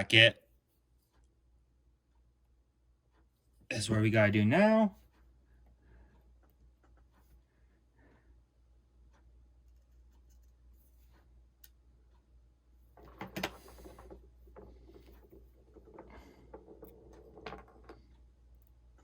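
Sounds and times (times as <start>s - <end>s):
light clicks of small parts: 9.1s - 12.3s
rustling and scraping: 12.9s - 18.2s.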